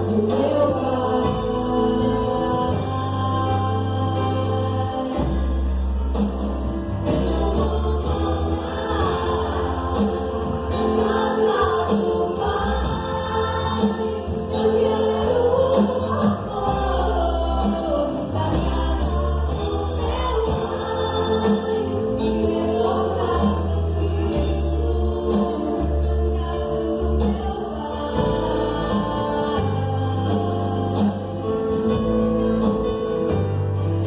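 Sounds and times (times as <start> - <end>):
voices singing gospel song: 0.0 - 32.0
bass line: 0.0 - 34.0.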